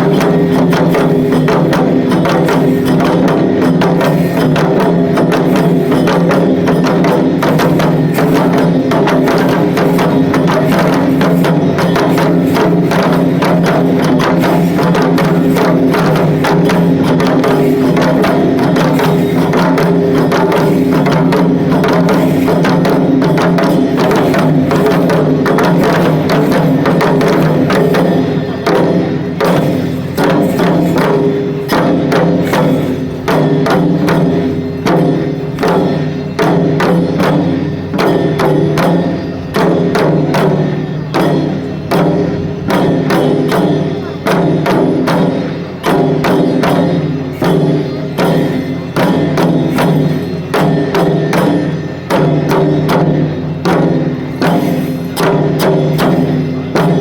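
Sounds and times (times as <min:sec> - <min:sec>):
fast dense drumming: 0:00.0 - 0:57.0
steady ringing tones: 0:00.0 - 0:57.0.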